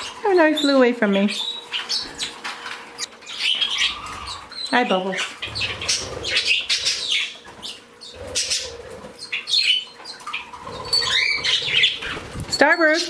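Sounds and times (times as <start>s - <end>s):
small birds chirping: 0.0s - 13.0s
wings flapping: 10.6s - 12.6s.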